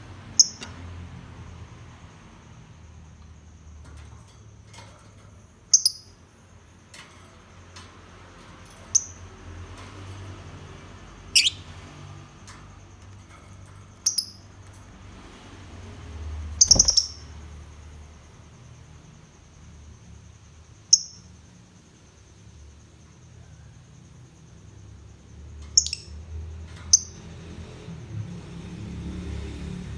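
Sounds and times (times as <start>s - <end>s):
lovebird chirping: 0.4s - 0.6s, 5.7s - 6.2s, 11.3s - 11.7s, 14.0s - 14.4s, 16.6s - 17.3s, 25.8s - 26.1s.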